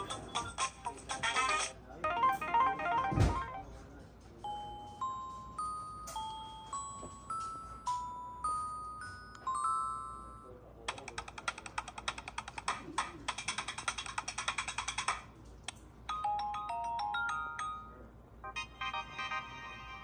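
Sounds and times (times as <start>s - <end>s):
phone ringtones: 0.0s - 3.7s.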